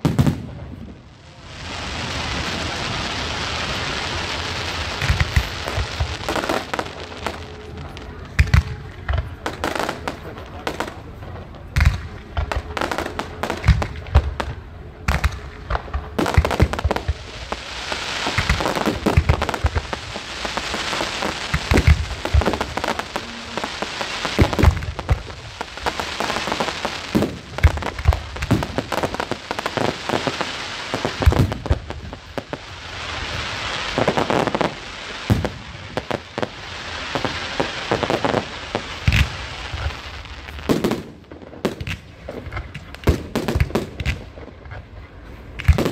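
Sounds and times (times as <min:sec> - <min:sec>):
fireworks bangs: 0:00.0 - 0:45.9
fireworks crackling: 0:00.0 - 0:45.9.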